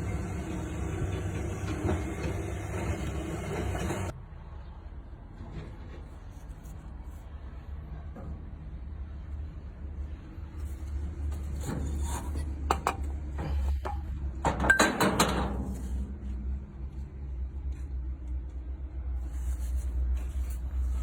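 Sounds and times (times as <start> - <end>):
engine rumbling: 0.0 - 21.0.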